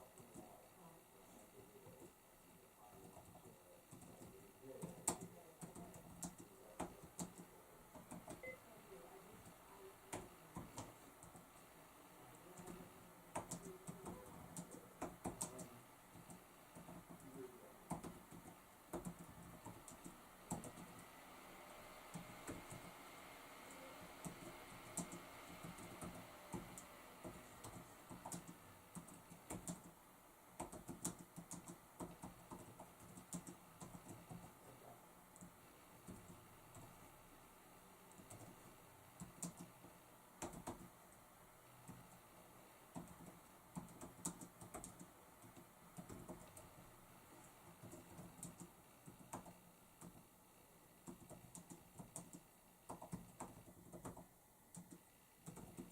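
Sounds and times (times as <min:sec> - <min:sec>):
computer keyboard typing: 0:03.0 - 0:08.6, 0:09.4 - 0:11.5, 0:12.4 - 0:21.1, 0:22.1 - 0:22.9, 0:23.7 - 0:30.0, 0:30.6 - 0:34.6, 0:35.4 - 0:37.0, 0:38.1 - 0:39.8, 0:40.4 - 0:41.0, 0:42.9 - 0:50.3, 0:51.0 - 0:55.9.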